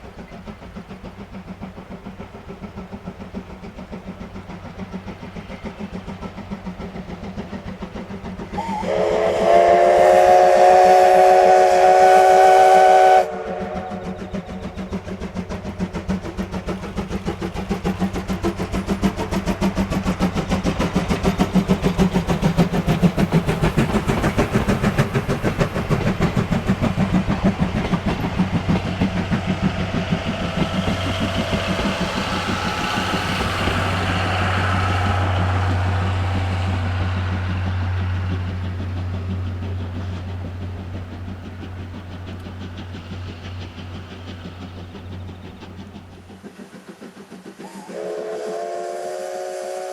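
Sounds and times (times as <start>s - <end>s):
steam locomotive exhaust chuffs: 0.0s - 49.9s
train running noise: 0.0s - 49.9s.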